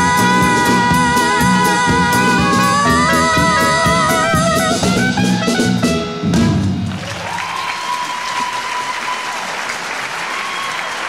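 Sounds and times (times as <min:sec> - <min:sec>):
music chord: 0:00.7 - 0:07.0
audience applauding: 0:06.8 - 0:11.0.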